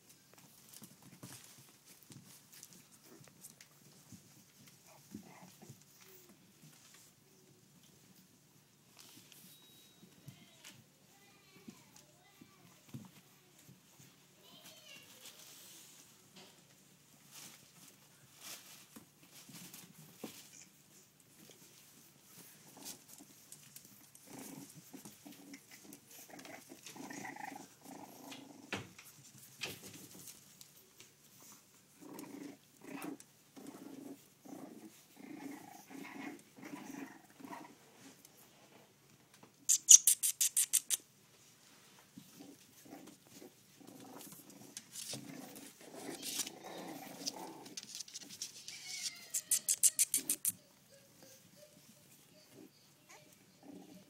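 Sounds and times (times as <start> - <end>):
puppies making low vocal sounds: 0.0 - 9.0, 19.2 - 38.9, 42.1 - 54.0
rapid high clicks: 39.7 - 41.0, 49.3 - 50.6.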